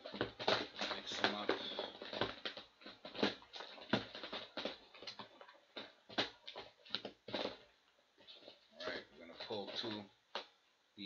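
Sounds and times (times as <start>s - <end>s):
cardboard boxes knocking together: 0.0s - 7.7s
boxes sliding rustle: 0.0s - 8.7s, 9.3s - 10.0s.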